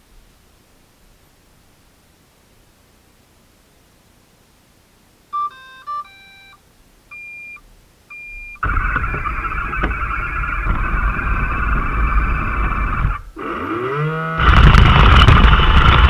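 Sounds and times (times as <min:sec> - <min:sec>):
long single-pitch beeps: 0:05.4 - 0:13.0
electronic start-up beeps: 0:05.4 - 0:13.2
vacuum motor whir: 0:08.6 - 0:16.0.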